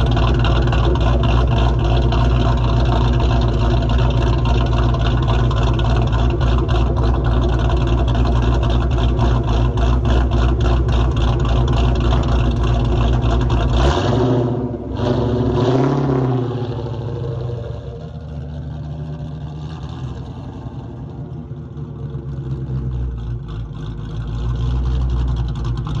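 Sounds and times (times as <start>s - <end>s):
car engine idling: 0.0s - 26.0s
engine revving: 0.0s - 26.0s.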